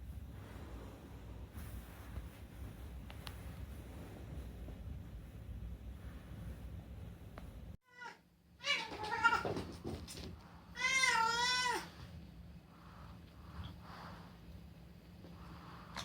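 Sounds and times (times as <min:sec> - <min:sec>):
cat meowing: 0:10.8 - 0:11.9.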